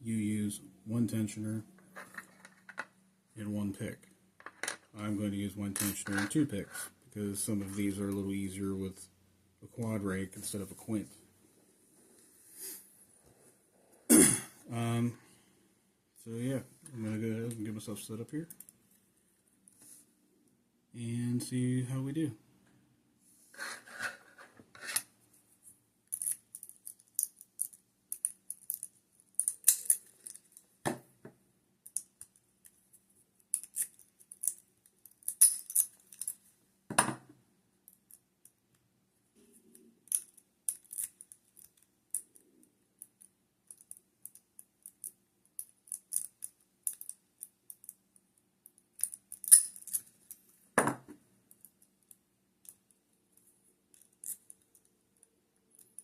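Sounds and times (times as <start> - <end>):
lock picks scraping in a lock: 33.5 - 36.4, 40.0 - 42.4, 43.0 - 48.0, 49.0 - 50.4.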